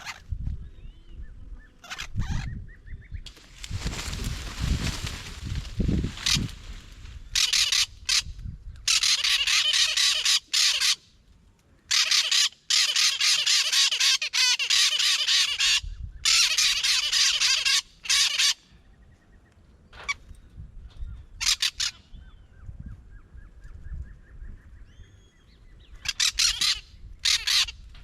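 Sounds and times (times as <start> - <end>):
parrots squawking: 1.8 - 2.5, 7.3 - 8.3, 8.9 - 11.0, 11.9 - 18.6, 21.4 - 22.0, 26.0 - 27.9.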